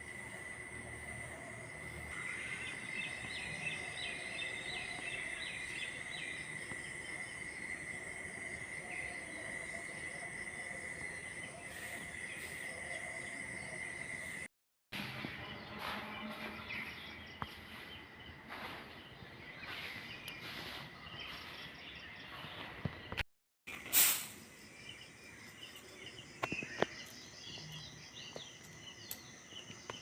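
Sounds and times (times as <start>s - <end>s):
insects droning high-pitched: 0.0s - 14.5s, 23.7s - 30.0s.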